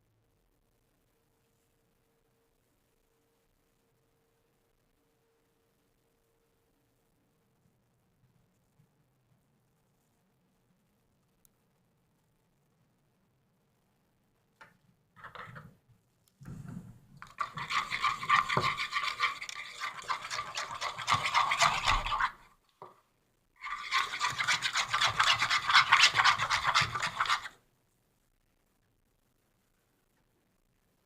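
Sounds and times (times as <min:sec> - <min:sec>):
scraping and stirring in a container: 0:16.5 - 0:23.0, 0:23.6 - 0:27.6.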